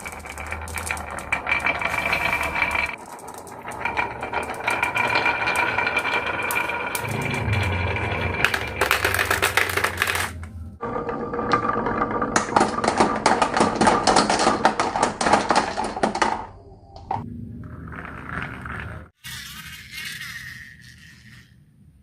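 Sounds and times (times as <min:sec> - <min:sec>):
marbles clattering down wooden run: 0:00.0 - 0:10.4.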